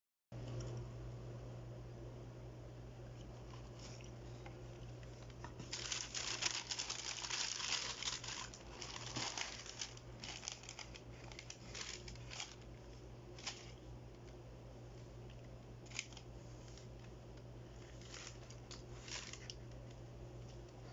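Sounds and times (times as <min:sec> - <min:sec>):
paper packaging crinkling: 0:03.3 - 0:14.3, 0:15.8 - 0:20.0.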